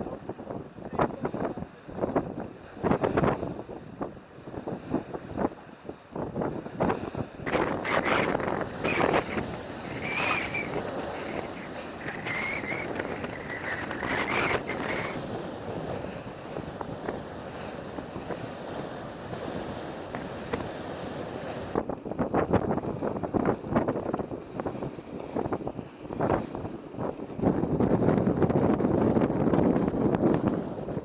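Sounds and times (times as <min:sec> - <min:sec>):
water rushing past hull: 0:00.0 - 0:31.0
wind buffeting microphone: 0:00.0 - 0:31.0.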